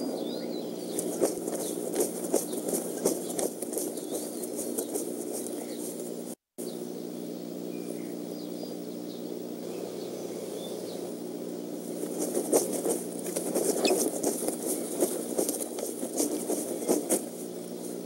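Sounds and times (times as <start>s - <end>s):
faint bird chirps: 0.0s - 12.4s, 13.6s - 15.3s
wings flapping in nest: 0.8s - 6.3s, 11.8s - 18.0s.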